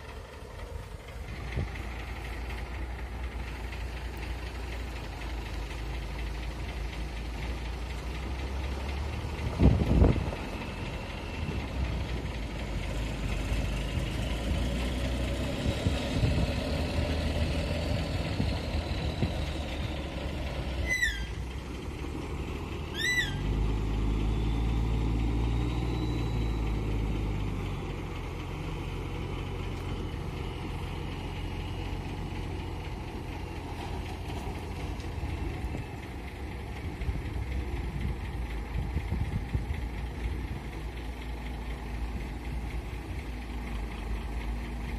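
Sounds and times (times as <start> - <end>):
diesel truck engine running: 0.0 - 44.9
air-brake squeaks: 20.6 - 21.5, 22.8 - 23.6.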